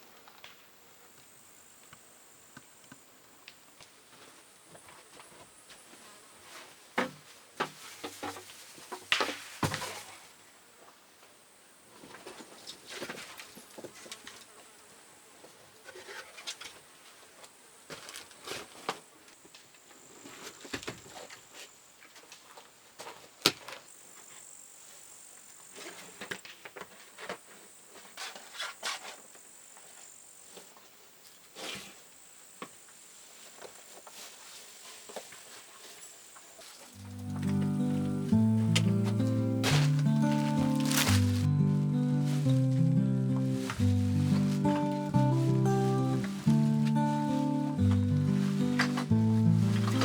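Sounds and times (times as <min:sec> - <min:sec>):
insects trilling: 0:35.5 - 0:50.0.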